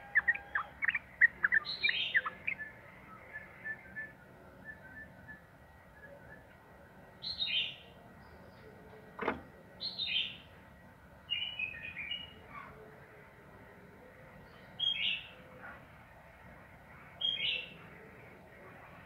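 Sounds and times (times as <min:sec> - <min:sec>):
bulbul singing bubbly phrases: 0:00.1 - 0:03.8.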